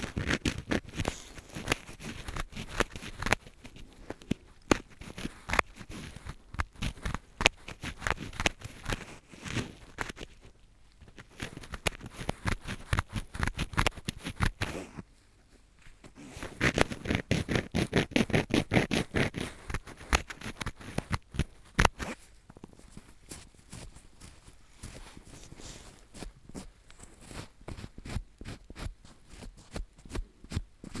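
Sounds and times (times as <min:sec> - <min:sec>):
earpick scratching inside ear: 0:00.0 - 0:15.0, 0:16.1 - 0:22.8.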